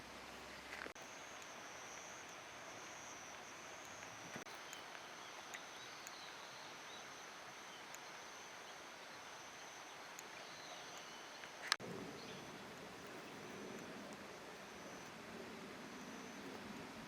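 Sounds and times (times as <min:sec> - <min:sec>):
steady hiss: 0:00.0 - 0:17.0
high-pitched insect tone: 0:01.0 - 0:11.6.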